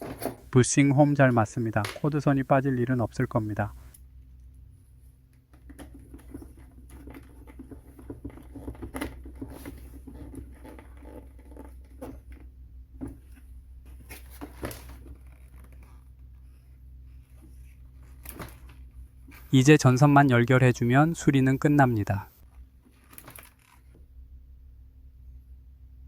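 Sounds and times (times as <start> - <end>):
rustling of plastic parts: 5.4 - 16.4, 22.4 - 24.0.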